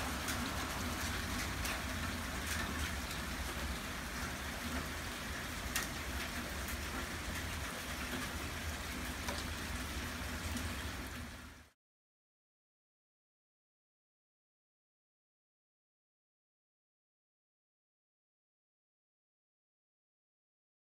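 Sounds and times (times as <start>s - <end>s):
hailstones ticking: 0.0s - 10.8s
heavy rain falling: 0.0s - 11.8s.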